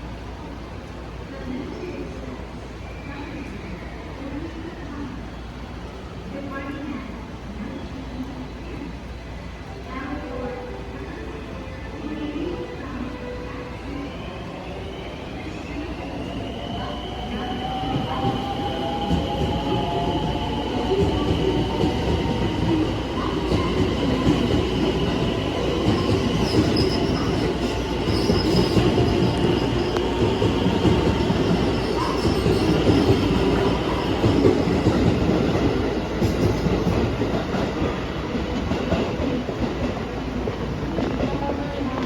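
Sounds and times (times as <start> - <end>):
train wheels rumbling on rail: 14.2 - 42.0
high wheel squeal: 26.0 - 30.2.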